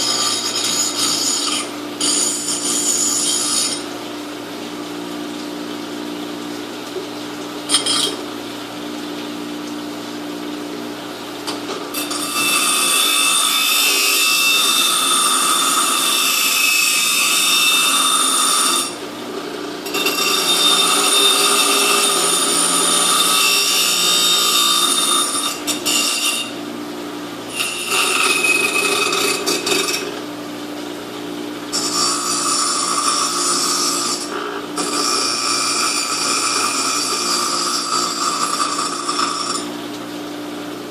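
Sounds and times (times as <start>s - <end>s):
power tool whining on metal: 0.0s - 3.9s, 11.9s - 26.6s, 27.5s - 30.2s.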